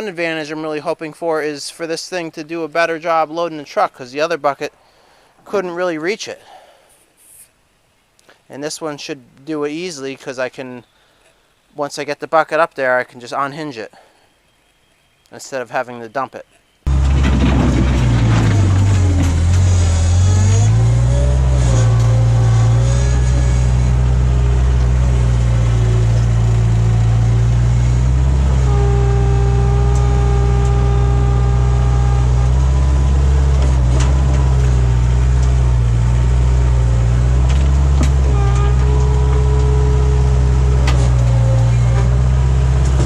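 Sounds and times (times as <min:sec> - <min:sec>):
steady higher whine: 0:16.9 - 0:36.0
loader engine running hard: 0:16.9 - 0:43.0.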